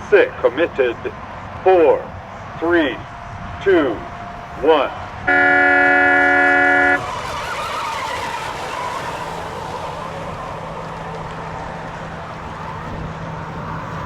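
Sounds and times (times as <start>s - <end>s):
horn sounding: 0.0s - 7.2s
rc boat engines whining: 0.0s - 14.0s.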